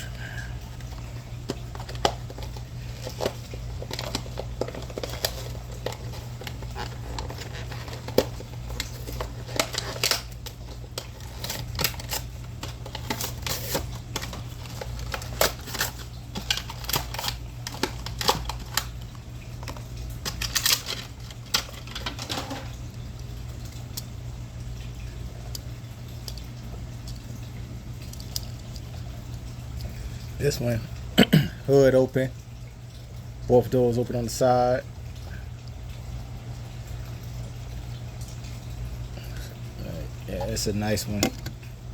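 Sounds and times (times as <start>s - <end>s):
plastic packaging crackling: 0.1s - 23.1s.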